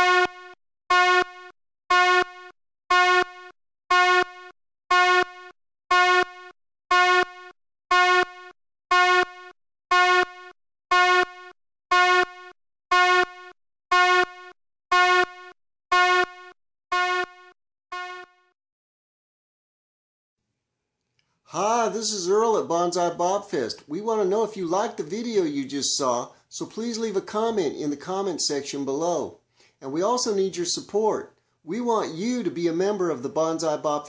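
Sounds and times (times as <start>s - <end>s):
fire alarm horn blasts: 0.0s - 18.6s.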